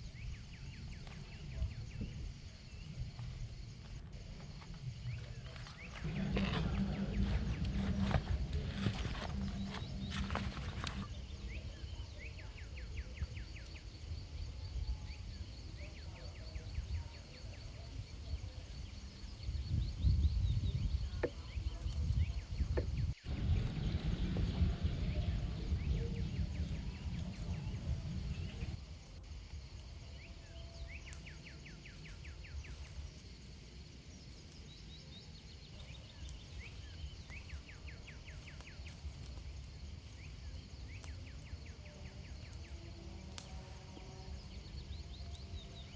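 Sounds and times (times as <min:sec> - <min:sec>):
insects chirping: 0:00.0 - 0:45.9
low rumbling noise: 0:03.6 - 0:11.8, 0:23.3 - 0:28.9.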